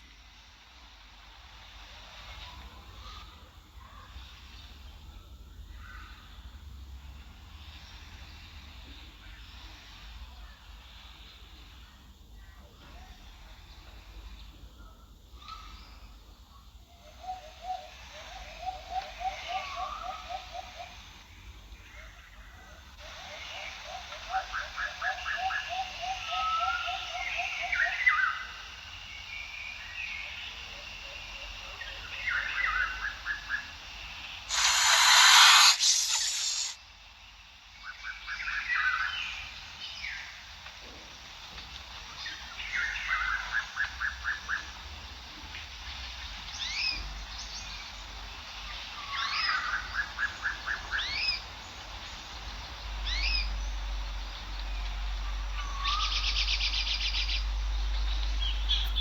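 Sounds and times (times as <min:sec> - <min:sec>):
loud hiss-like rush of noise: 0:00.0 - 0:14.7, 0:27.2 - 0:38.0.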